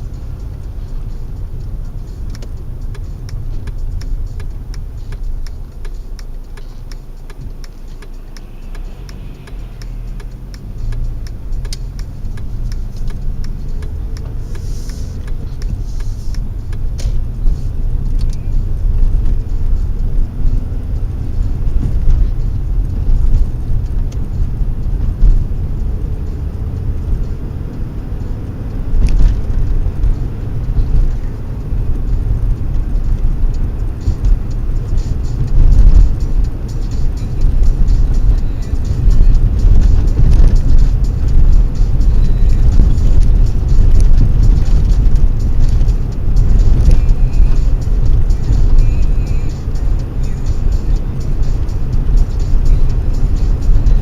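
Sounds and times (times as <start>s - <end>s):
car engine and road noise: 0.0s - 54.0s.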